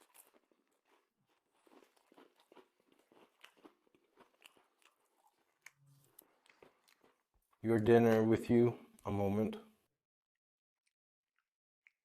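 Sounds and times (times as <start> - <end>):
chewing food close-up: 0.0 - 8.3.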